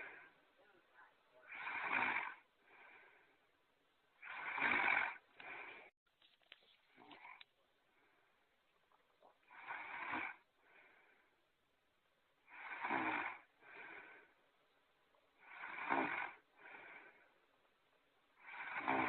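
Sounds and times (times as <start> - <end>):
soft breath out: 0.0 - 0.4, 1.4 - 3.5, 4.2 - 6.0, 9.5 - 11.4, 12.5 - 14.5, 15.4 - 17.5
loud snoring: 1.5 - 3.0, 4.2 - 5.9, 9.5 - 10.5, 12.4 - 14.2, 15.4 - 17.1, 18.4 - 19.0.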